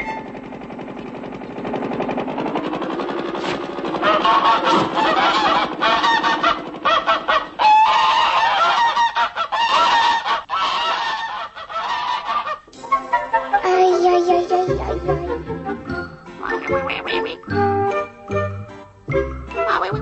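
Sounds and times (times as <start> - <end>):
goose-like honking calls: 4.0 - 14.2, 16.4 - 17.5.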